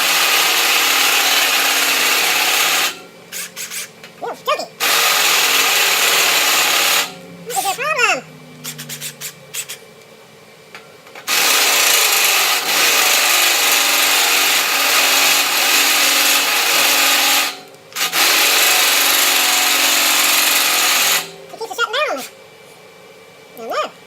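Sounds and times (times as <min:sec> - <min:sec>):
electric drill grinding steel: 0:00.0 - 0:03.9, 0:04.8 - 0:07.8, 0:11.2 - 0:21.4.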